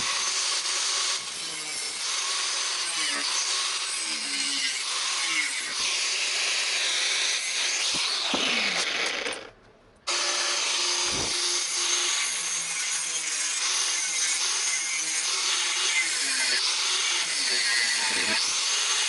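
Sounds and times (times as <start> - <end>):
power tool grinding metal: 0.0 - 9.5, 10.1 - 19.0.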